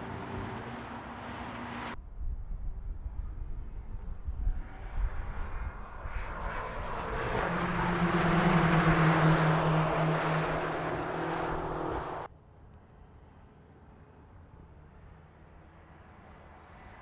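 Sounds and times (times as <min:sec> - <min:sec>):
car engine running hard: 0:06.9 - 0:12.3.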